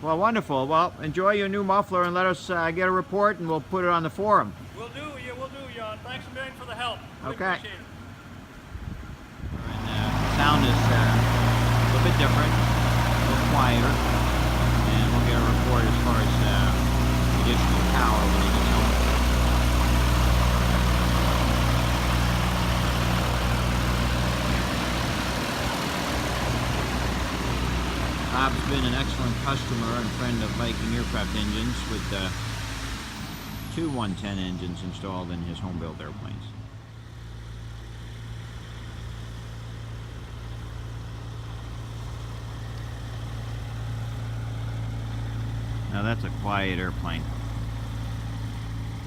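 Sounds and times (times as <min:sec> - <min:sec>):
aircraft engine running steadily: 0:08.1 - 0:33.2.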